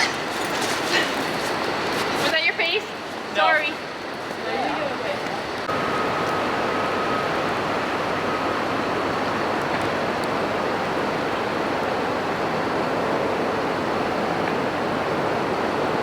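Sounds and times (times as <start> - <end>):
faint high steady tone: 3.8 - 14.7.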